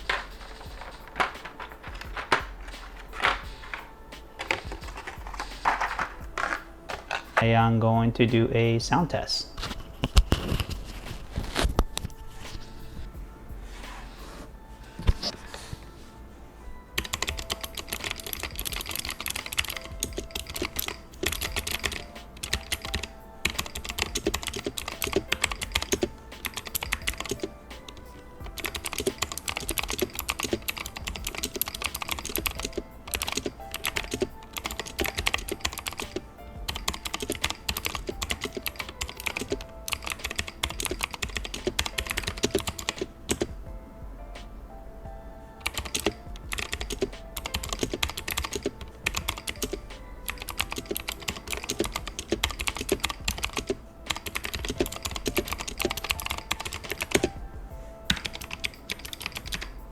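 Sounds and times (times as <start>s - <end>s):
mechanical keyboard typing clacks: 0.0s - 3.8s, 4.4s - 7.6s, 17.0s - 43.6s, 45.6s - 57.4s, 58.1s - 59.9s.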